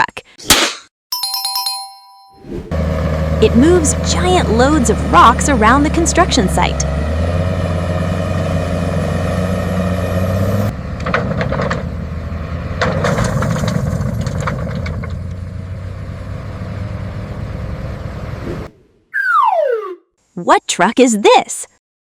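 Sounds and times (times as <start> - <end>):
diesel truck engine droning: 2.7 - 18.4.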